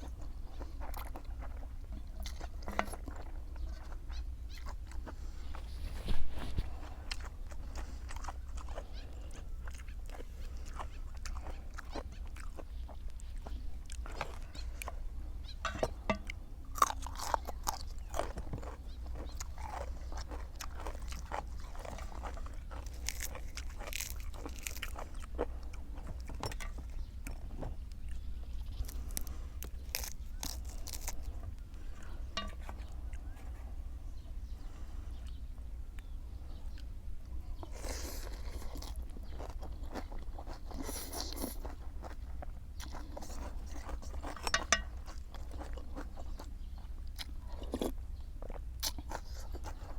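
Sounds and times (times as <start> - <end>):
chewing and crunching: 0.0 - 49.9
steady low hum: 0.0 - 49.9.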